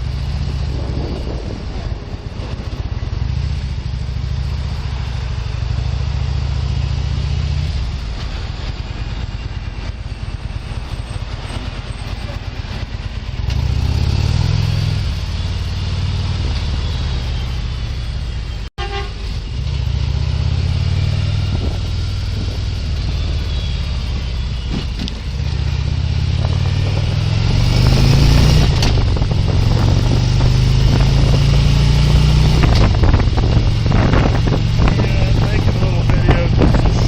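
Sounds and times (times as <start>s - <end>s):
wind noise on microphone: 0.0s - 6.6s, 18.9s - 37.0s
motorcycle engine running: 0.0s - 37.0s.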